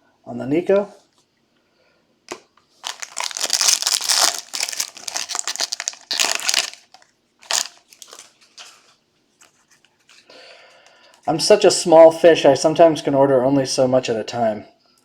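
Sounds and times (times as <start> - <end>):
plastic packaging crinkling: 2.3 - 10.4.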